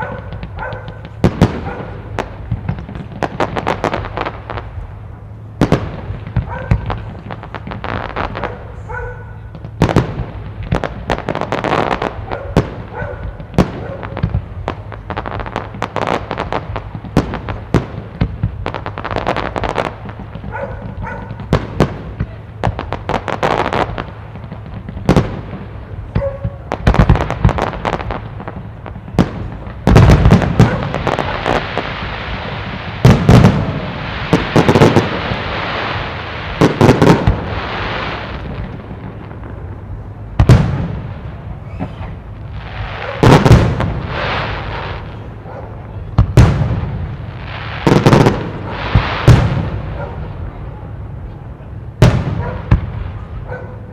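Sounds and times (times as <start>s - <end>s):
crackling hiss: 0.0s - 53.9s
fireworks bursting: 0.0s - 53.9s.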